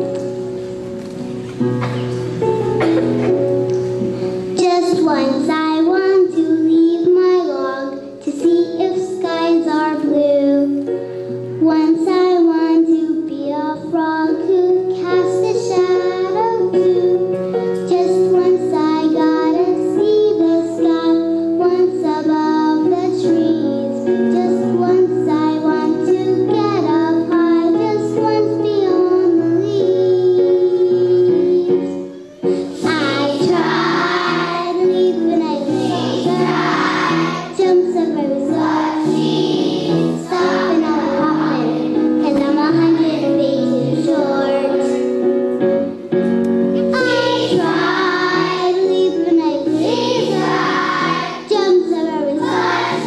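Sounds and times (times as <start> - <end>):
musical accompaniment: 0.0 - 53.0
young children singing: 17.9 - 45.1, 46.8 - 53.0.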